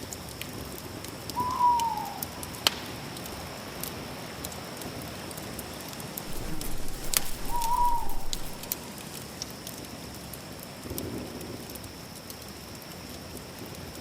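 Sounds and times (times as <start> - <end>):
faint steady high tone: 6.3 - 8.7
short bird call: 6.3 - 8.7.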